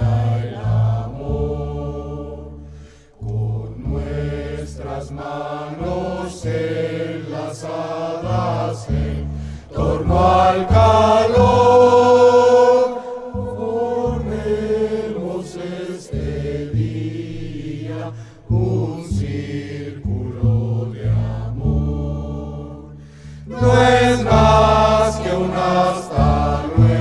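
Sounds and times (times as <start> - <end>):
group singing: 0.0 - 27.0.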